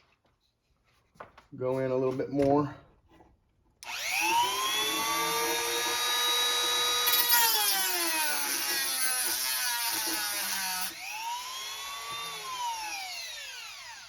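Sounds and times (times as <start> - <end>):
rotary tool whining: 3.8 - 14.0.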